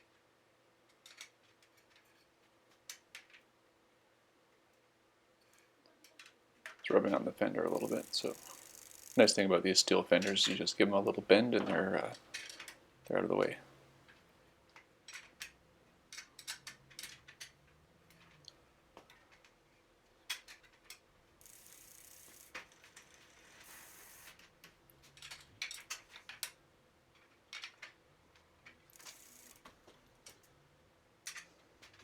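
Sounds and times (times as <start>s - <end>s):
light handling ticks: 7.0s - 10.7s
bicycle freewheel ratcheting clicks: 7.7s - 9.4s, 21.4s - 24.4s, 28.9s - 29.8s
brief hissing: 23.6s - 24.3s.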